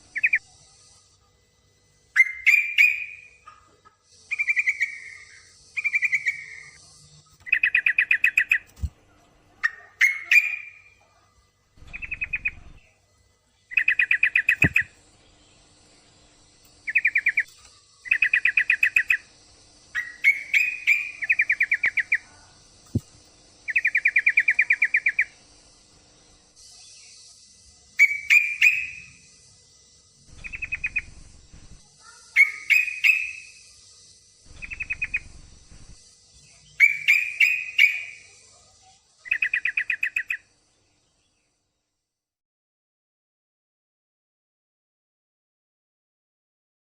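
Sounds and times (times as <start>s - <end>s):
steady high hiss: 0.0s - 3.4s, 4.1s - 9.6s, 10.2s - 41.7s
bird chattering call: 32.4s - 33.5s, 34.5s - 35.9s.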